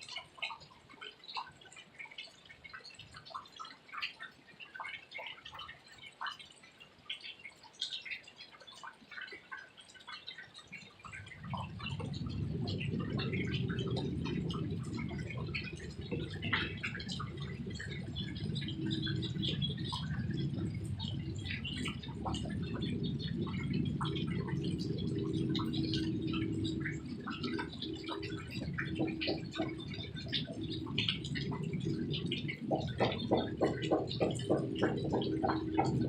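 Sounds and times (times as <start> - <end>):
faint steady hum: 0.0 - 36.0
rain dripping and pattering: 0.0 - 36.0
steady low rumble: 11.0 - 36.0.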